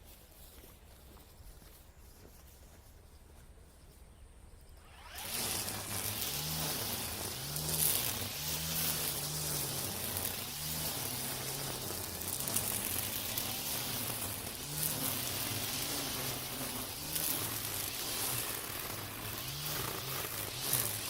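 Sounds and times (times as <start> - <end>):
brush cutter motor hum: 4.7 - 21.0
trimmer line swishing through grass: 4.8 - 21.0.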